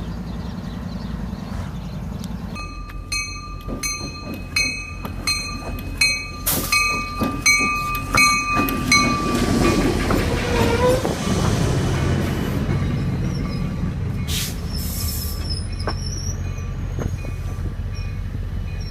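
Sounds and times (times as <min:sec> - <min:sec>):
diesel locomotive rumble: 0:00.0 - 0:18.9
locomotive bell ringing: 0:02.6 - 0:11.0, 0:15.4 - 0:18.9.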